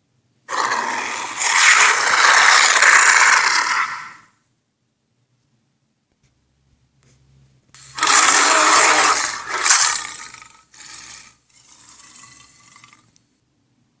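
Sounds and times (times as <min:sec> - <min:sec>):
rasping growls: 0:00.5 - 0:04.3, 0:07.8 - 0:13.2
raspy hissing dinosaur roar: 0:00.5 - 0:04.3, 0:07.8 - 0:13.1.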